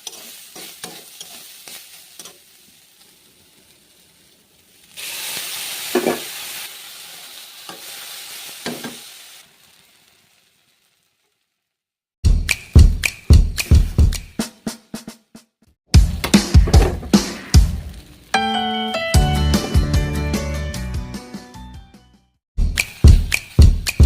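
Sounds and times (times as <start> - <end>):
food sizzling in hot oil: 0.0 - 11.8, 16.0 - 18.4, 22.8 - 24.0
spatula knocking in a pan: 16.0 - 17.3.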